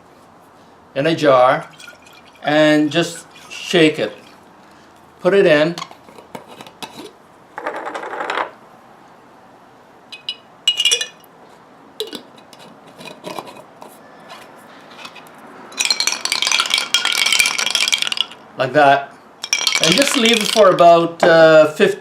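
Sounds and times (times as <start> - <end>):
rustle: 0.0 - 22.0
metal fittings clinking against glass jar: 1.7 - 2.5, 3.2 - 4.4, 10.1 - 11.3, 15.8 - 18.4, 19.4 - 20.8.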